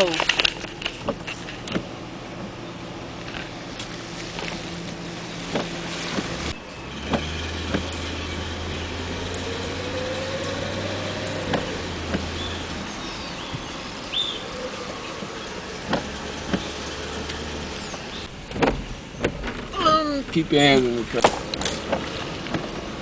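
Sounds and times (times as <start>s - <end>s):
truck engine driving: 0.0s - 23.0s
small knocks and rattles: 14.9s - 22.9s.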